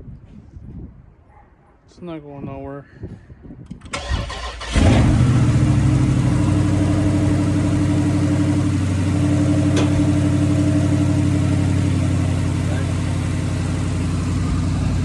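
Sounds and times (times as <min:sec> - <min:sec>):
car engine starting and idling: 0:03.9 - 0:15.0.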